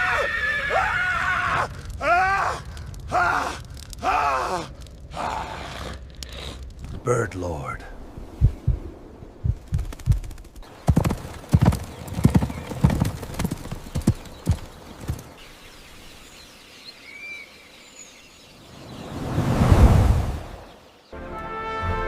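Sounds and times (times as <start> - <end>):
horse hooves clip-clopping: 9.5 - 15.4.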